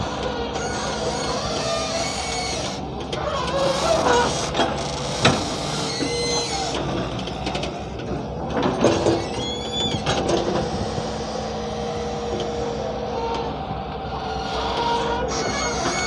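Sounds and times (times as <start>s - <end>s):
short high squeals: 0.0s - 7.1s, 9.0s - 10.2s, 14.2s - 16.0s
excavator engine drone: 0.0s - 16.0s.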